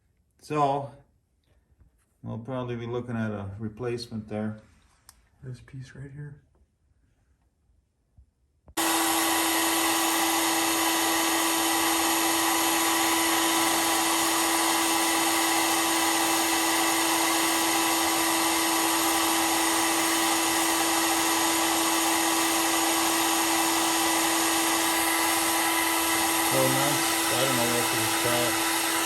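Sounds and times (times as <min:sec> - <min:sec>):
heat gun blowing: 0:08.8 - 0:29.0.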